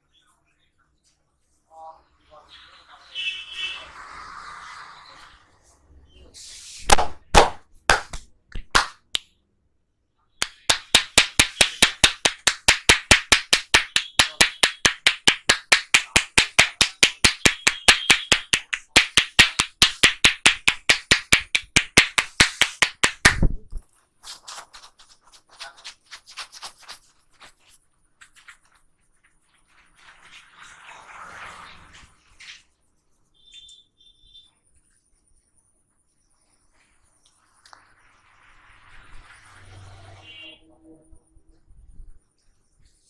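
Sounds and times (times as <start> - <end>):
hands tapping on head: 6.9 - 9.2, 10.4 - 23.6
faint handling sounds: 23.7 - 31.1.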